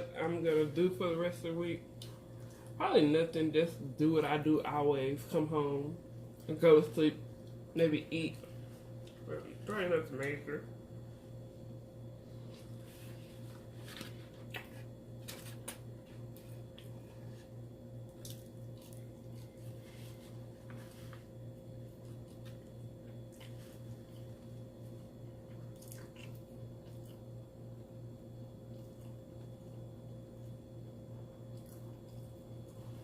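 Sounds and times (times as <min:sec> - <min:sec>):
low electrical hum: 0:00.0 - 0:33.0
chewing and mouth smacks: 0:14.0 - 0:17.1, 0:18.0 - 0:19.8, 0:21.9 - 0:24.6, 0:25.4 - 0:27.4, 0:28.6 - 0:30.6, 0:31.4 - 0:33.0.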